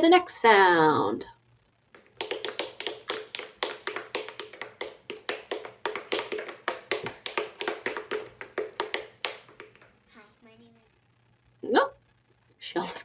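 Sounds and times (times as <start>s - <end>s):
tap shoes on hard floor: 1.9s - 10.4s.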